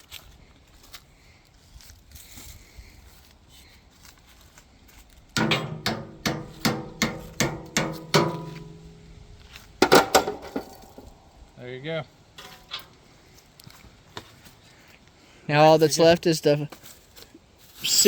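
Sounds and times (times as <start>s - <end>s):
hammer striking steel: 5.4s - 9.2s.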